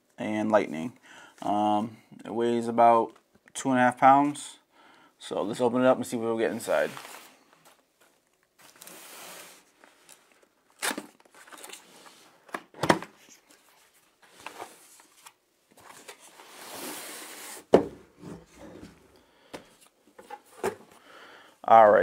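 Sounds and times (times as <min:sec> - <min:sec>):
packaging rustling and scraping: 0:06.6 - 0:12.5.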